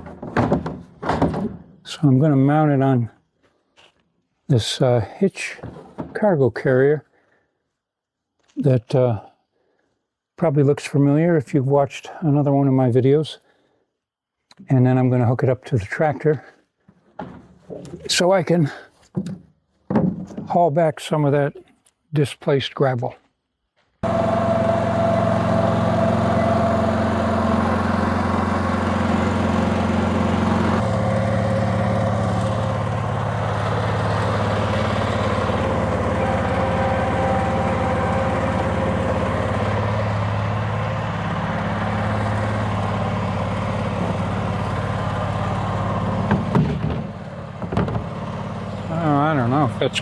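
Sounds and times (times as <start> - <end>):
tractor engine running: 24.0 - 50.0.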